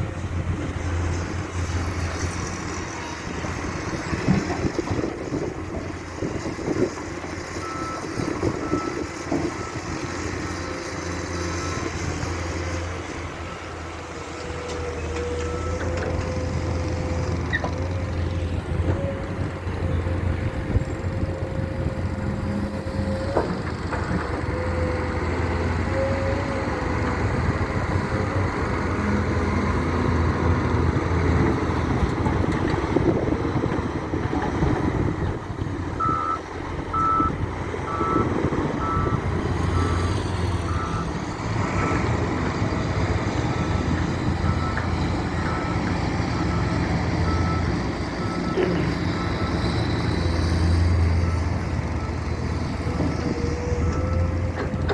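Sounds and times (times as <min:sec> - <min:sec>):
heavy diesel machinery running: 0:00.0 - 0:54.9
reversing alarm beeping: 0:36.0 - 0:41.2.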